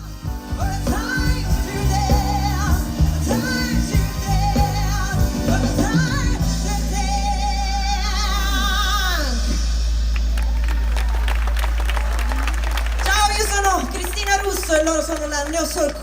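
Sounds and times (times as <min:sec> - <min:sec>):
woman singing with vibrato: 0:00.0 - 0:09.8
piano or keyboards: 0:00.0 - 0:12.8
bass: 0:00.0 - 0:16.0
drums: 0:00.0 - 0:16.0.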